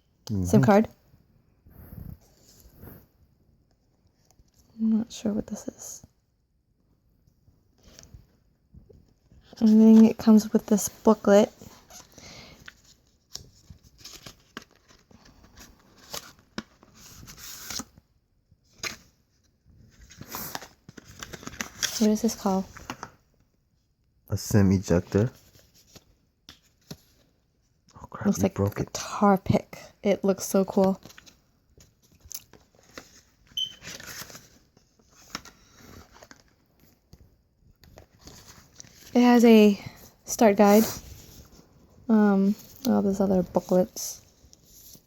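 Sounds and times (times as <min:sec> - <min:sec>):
paper and card rustling: 0:09.0 - 0:18.0, 0:18.6 - 0:23.1, 0:30.5 - 0:45.0.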